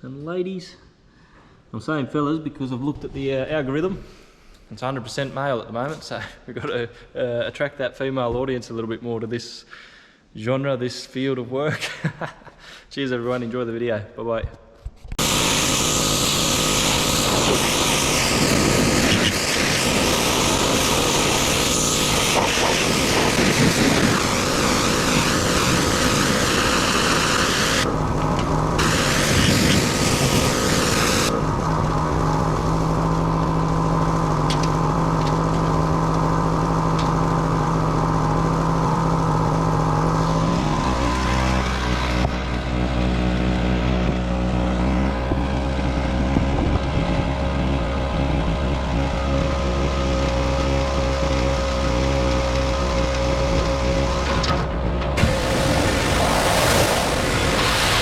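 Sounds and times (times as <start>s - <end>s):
water spraying hiss: 15.2s - 33.7s, 55.2s - 58.0s
pressure washer motor drone: 15.2s - 58.0s.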